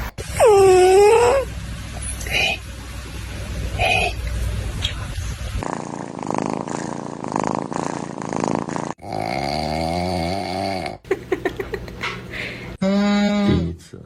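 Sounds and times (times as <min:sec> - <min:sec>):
cat snoring: 0:05.6 - 0:11.0.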